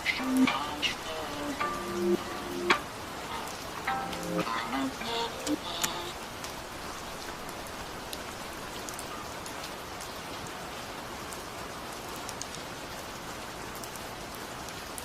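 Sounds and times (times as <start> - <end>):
raindrop ticks: 0.0 - 6.6, 12.1 - 13.1
rain falling: 0.0 - 15.0.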